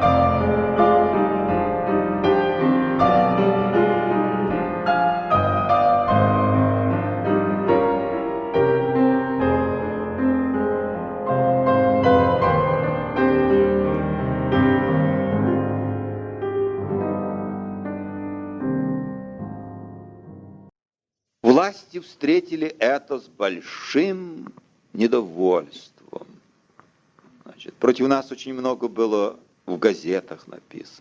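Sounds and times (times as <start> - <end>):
piano music: 0.0 - 20.7.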